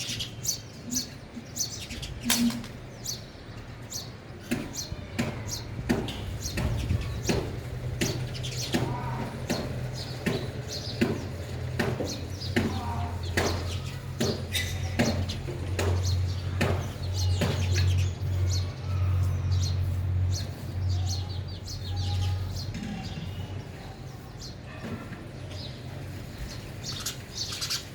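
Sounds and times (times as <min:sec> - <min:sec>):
sparrows chirping: 0:00.0 - 0:27.9.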